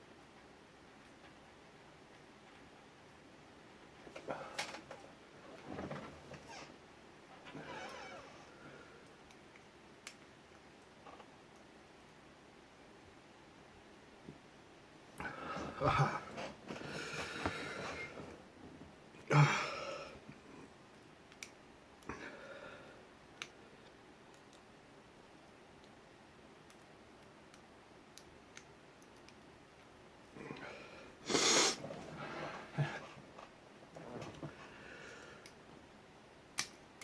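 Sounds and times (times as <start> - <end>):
breaths through the nose: 30.4 - 33.2.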